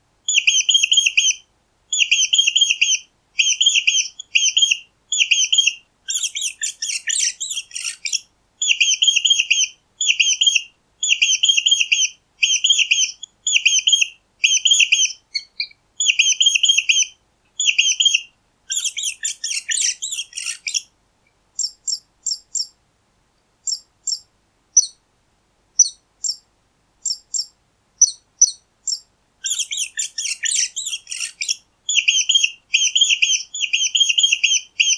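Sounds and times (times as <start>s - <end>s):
mice squeaking: 2.0s - 10.6s, 11.2s - 20.8s, 23.7s - 24.2s, 25.8s - 26.4s, 27.1s - 34.9s.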